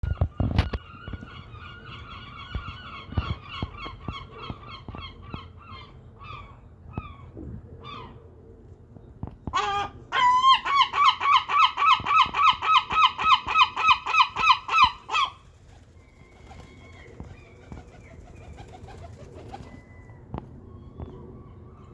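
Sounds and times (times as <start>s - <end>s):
gulls calling: 9.4s - 20.2s.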